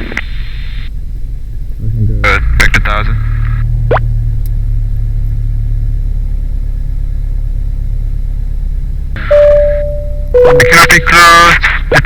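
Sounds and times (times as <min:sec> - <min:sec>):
steady higher tone: 0:09.2 - 0:11.3.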